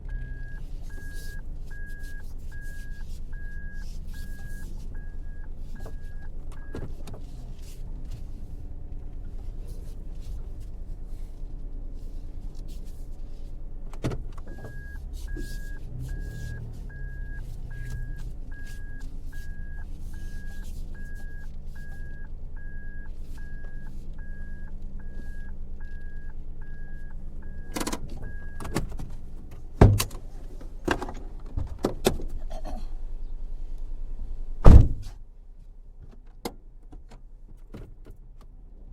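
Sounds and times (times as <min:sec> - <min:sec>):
car engine running: 0:00.0 - 0:34.7
knocks and clunks of controls: 0:00.0 - 0:35.3, 0:35.9 - 0:38.9
dashboard indicator tone: 0:14.5 - 0:28.8.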